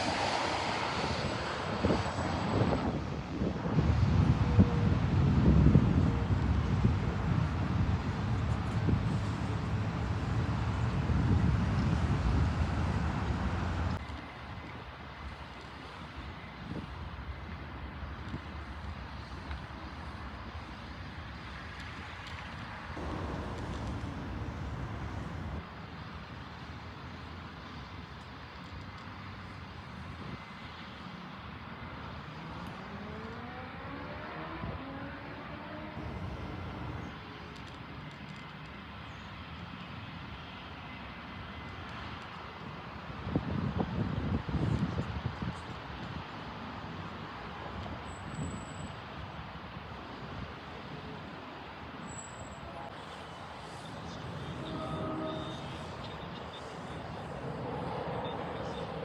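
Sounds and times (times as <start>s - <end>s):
jet engine roar: 0.0s - 2.8s, 23.0s - 25.6s, 36.0s - 37.1s
wind buffeting microphone: 3.5s - 14.0s, 23.0s - 25.6s, 36.0s - 37.1s.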